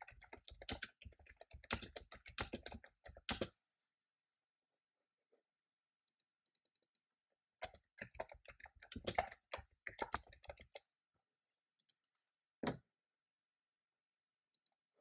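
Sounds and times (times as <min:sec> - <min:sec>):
typing on a keyboard: 0:00.0 - 0:03.6, 0:07.6 - 0:10.8.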